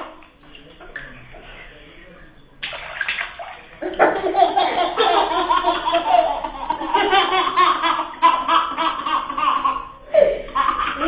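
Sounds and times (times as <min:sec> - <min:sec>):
laughter: 0:03.8 - 0:08.1.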